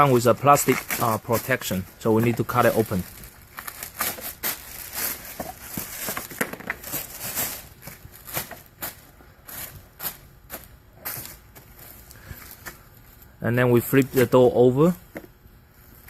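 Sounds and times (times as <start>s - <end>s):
plastic wrap crinkling and tearing: 0.0s - 10.2s.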